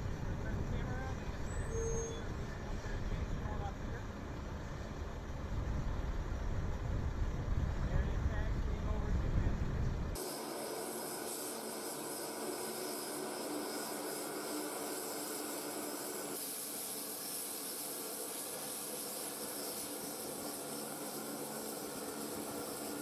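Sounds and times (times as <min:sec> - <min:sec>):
aircraft engine hiss: 0:10.1 - 0:23.0.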